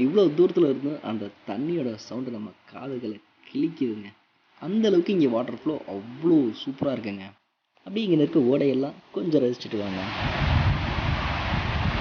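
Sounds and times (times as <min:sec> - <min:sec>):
stream and waterfall rushing: 0:09.6 - 0:12.0
low rumble: 0:10.1 - 0:12.0.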